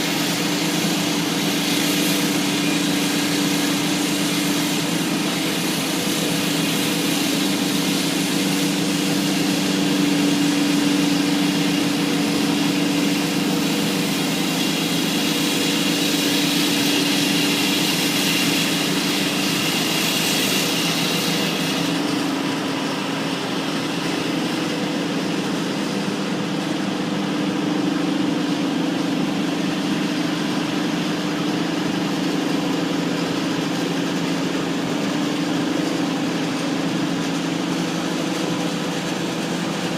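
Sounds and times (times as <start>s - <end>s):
saw blade cutting hiss: 0.0s - 27.1s
concrete saw engine drone: 0.0s - 39.9s.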